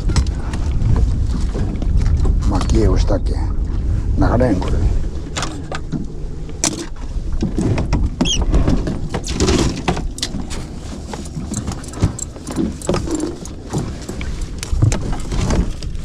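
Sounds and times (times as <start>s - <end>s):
boat engine running: 0.0s - 16.0s
knocks and clicks of gear: 5.3s - 16.0s.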